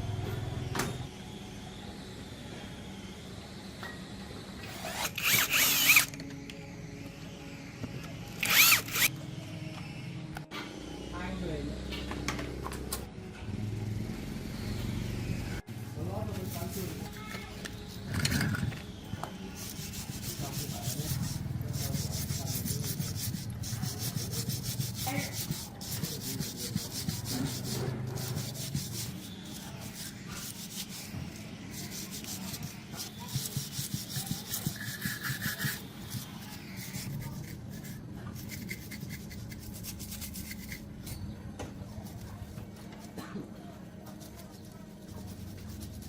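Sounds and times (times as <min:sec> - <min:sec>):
steady low hum: 0:00.0 - 0:46.0
abrasive rubbing strokes: 0:04.7 - 0:06.1, 0:08.4 - 0:09.1, 0:16.0 - 0:18.7, 0:19.5 - 0:41.2.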